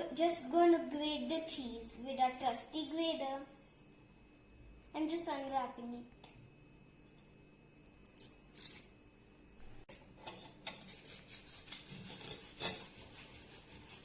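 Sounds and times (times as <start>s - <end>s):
cheese grating on hand grater: 10.8s - 14.0s.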